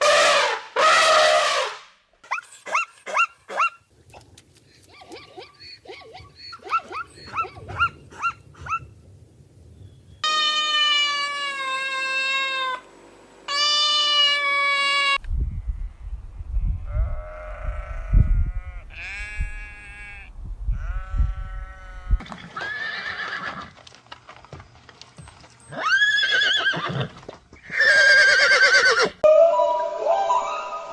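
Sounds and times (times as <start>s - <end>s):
animal bleats: 13.5s - 15.2s, 16.8s - 23.6s
low rumble: 15.2s - 18.8s.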